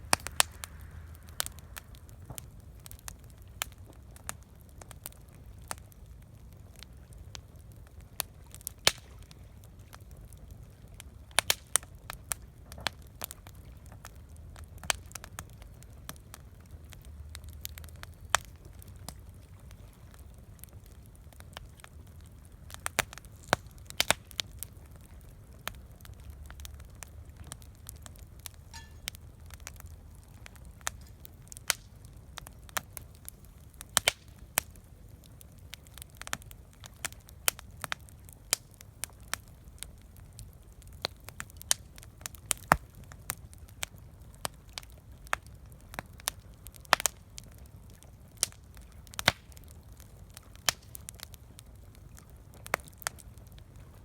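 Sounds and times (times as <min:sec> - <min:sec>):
low steady rumble: 0:00.0 - 0:04.7
campfire crackling and popping: 0:00.0 - 0:54.0.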